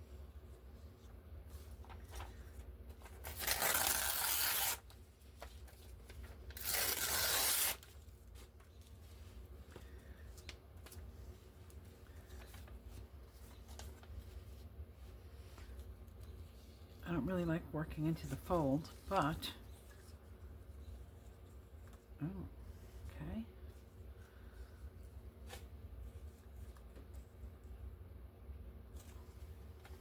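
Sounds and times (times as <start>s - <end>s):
paper tearing: 3.0s - 5.0s, 5.6s - 8.5s.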